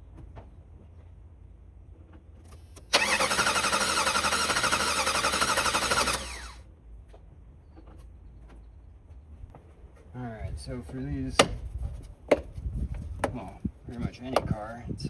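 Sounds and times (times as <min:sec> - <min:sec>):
starter motor cranking engine: 0:02.8 - 0:06.6.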